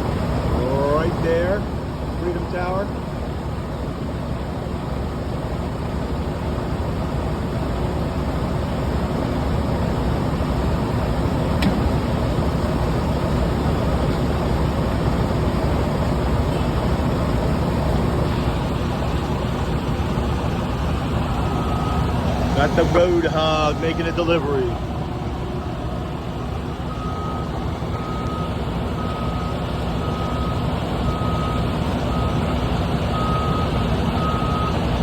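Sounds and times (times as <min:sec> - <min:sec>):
rumble of vehicles and machinery: 0:00.0 - 0:35.0
sharp click: 0:11.6 - 0:11.9.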